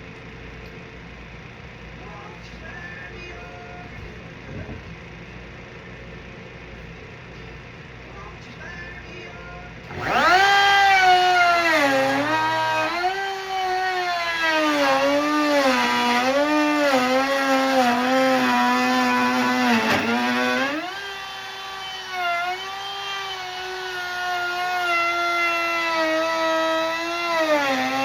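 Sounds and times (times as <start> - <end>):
power tool motor whining: 9.8 - 28.0.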